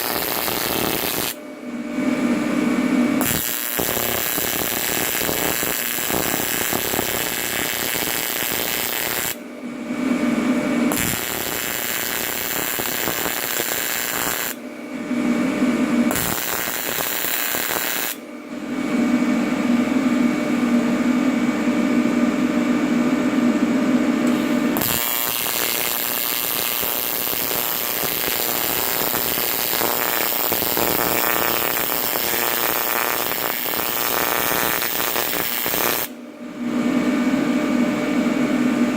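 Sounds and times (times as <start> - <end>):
welding arc buzzing: 0.0 - 1.4, 2.5 - 9.4, 10.9 - 14.6, 15.4 - 18.2, 24.2 - 36.2.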